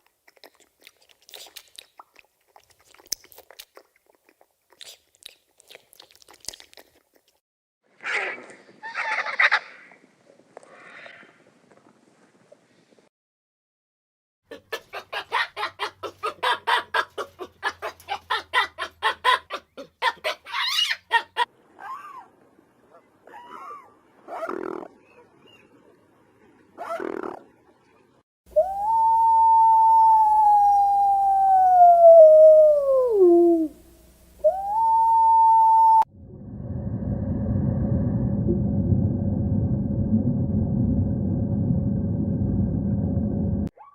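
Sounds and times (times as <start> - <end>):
chicken clucking: 14.5 - 21.5
chicken squawk: 14.5 - 22.3
dog howling: 28.6 - 33.8, 34.4 - 36.1
low rumbling noise: 35.8 - 43.7.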